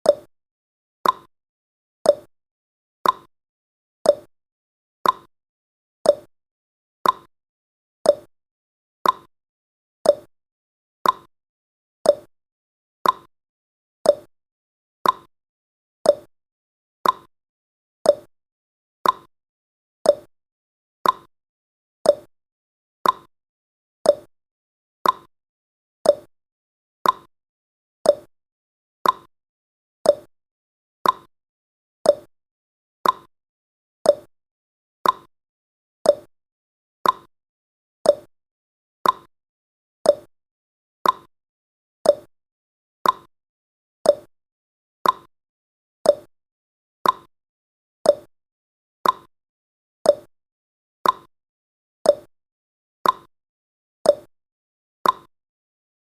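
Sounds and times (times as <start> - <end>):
timer ticking: 0.0 - 0.3, 1.0 - 1.3, 2.1 - 2.3, 3.0 - 3.3, 4.1 - 4.3, 5.0 - 5.3, 6.1 - 6.3, 7.0 - 7.3, 8.1 - 8.3, 9.0 - 9.3, 10.1 - 10.3, 11.0 - 11.3, 12.1 - 12.3, 13.0 - 13.3, 14.1 - 14.3, 15.0 - 15.3, 16.1 - 16.3, 17.0 - 17.3, 18.1 - 18.3, 19.0 - 19.3, 20.1 - 20.3, 21.0 - 21.3, 22.1 - 22.3, 23.0 - 23.3, 24.1 - 24.3, 25.0 - 25.3, 26.0 - 26.3, 27.0 - 27.3, 28.0 - 28.3, 29.0 - 29.3, 30.0 - 30.3, 31.0 - 31.3, 32.1 - 32.3, 33.0 - 33.3, 34.1 - 34.3, 35.0 - 35.3, 36.0 - 36.3, 37.0 - 37.3, 38.0 - 38.3, 39.0 - 39.3, 40.0 - 40.3, 41.0 - 41.3, 42.0 - 42.3, 43.0 - 43.3, 44.1 - 44.3, 45.0 - 45.3, 46.1 - 46.3, 47.0 - 47.3, 48.1 - 48.3, 49.0 - 49.3, 50.1 - 50.3, 51.0 - 51.3, 52.1 - 52.3, 53.0 - 53.3, 54.1 - 54.3, 55.0 - 55.3.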